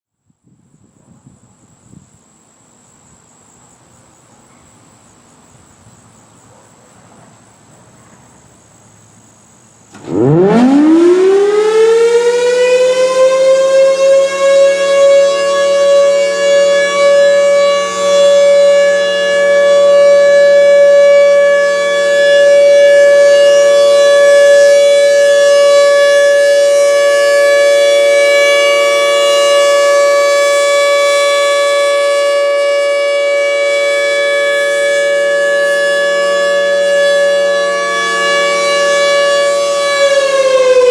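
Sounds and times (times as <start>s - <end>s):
warning siren wailing: 10.0s - 40.9s.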